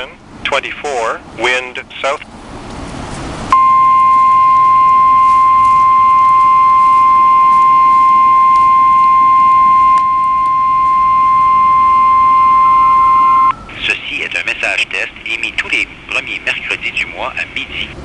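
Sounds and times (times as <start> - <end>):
loud steady alarm tone: 3.6 - 13.6.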